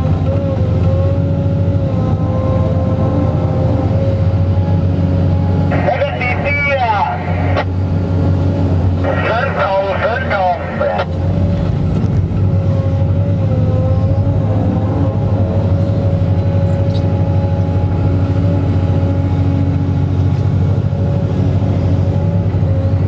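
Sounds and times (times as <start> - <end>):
excavator engine running: 0.0 - 23.0
steady whine: 1.9 - 22.4.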